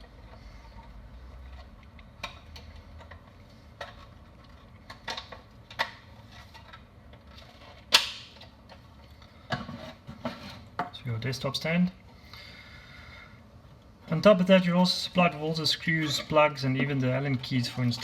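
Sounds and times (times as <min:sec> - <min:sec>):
plastic parts clicking: 0:00.2 - 0:08.9
plastic snap: 0:07.9 - 0:08.5.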